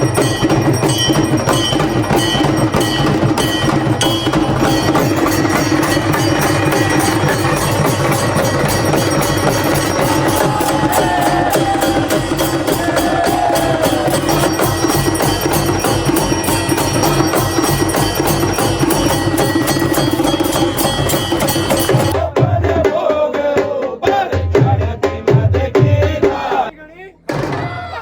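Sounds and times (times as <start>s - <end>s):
clanging bells: 0.0s - 22.2s
fast drum beat: 0.0s - 26.7s.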